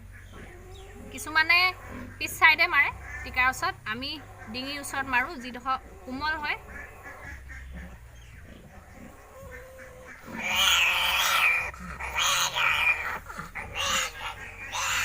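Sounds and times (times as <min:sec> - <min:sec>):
piglet squealing: 0:08.7 - 0:15.0.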